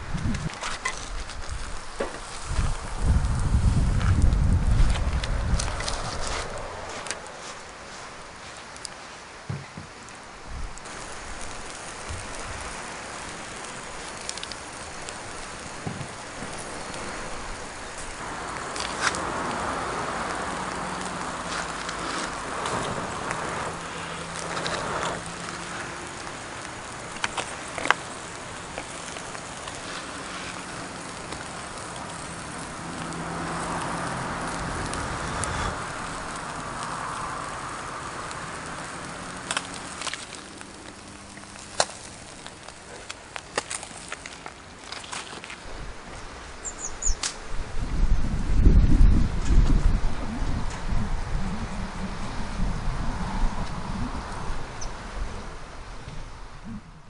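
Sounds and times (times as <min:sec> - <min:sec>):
sharp pops of fire: 0:00.0 - 0:47.5
wood fire crackling: 0:00.0 - 0:57.0.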